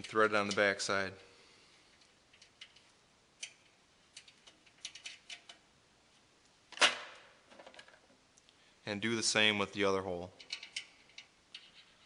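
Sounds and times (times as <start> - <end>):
small metal clicks of nut threading: 10.4 - 11.8.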